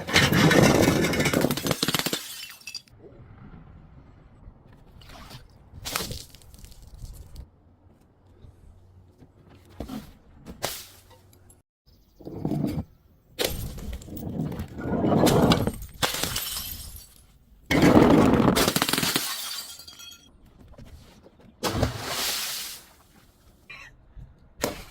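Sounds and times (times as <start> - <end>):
glass breaking and crunching: 0.1 - 2.9, 15.6 - 20.3.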